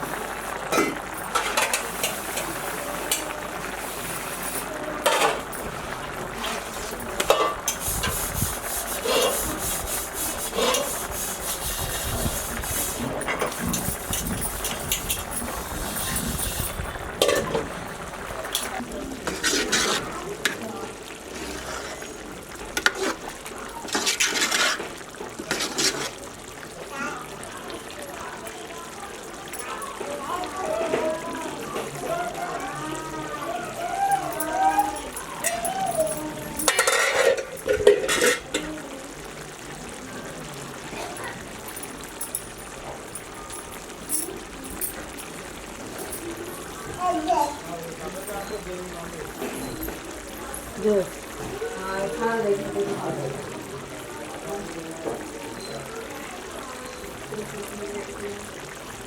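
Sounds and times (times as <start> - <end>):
utensils clinking against pots: 0.0 - 20.7, 22.7 - 26.2, 34.0 - 38.8, 41.0 - 51.0
stirring liquid: 0.0 - 26.7, 34.1 - 38.8.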